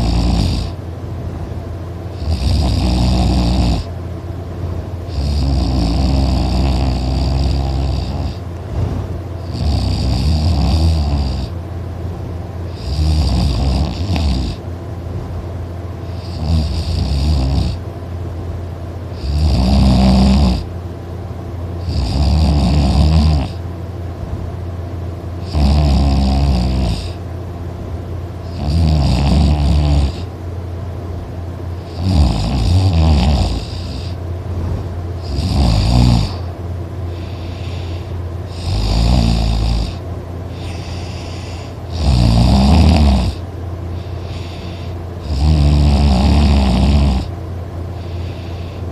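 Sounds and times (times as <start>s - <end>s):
person snoring loudly: 0.0s - 0.8s, 2.2s - 3.9s, 5.1s - 8.4s, 9.4s - 11.6s, 12.7s - 14.6s, 16.0s - 17.8s, 19.1s - 20.7s, 21.8s - 23.6s, 25.4s - 27.2s, 28.4s - 30.3s, 31.8s - 34.2s, 35.2s - 36.5s, 37.1s - 43.4s, 44.0s - 47.3s
quiet breathing: 36.3s - 38.7s, 39.9s - 41.9s, 43.4s - 45.2s, 47.9s - 48.9s.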